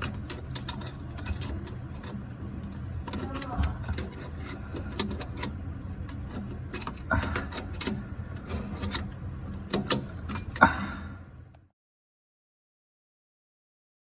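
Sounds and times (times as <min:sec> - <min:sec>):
metal tools clicking and knocking: 0:00.0 - 0:10.6.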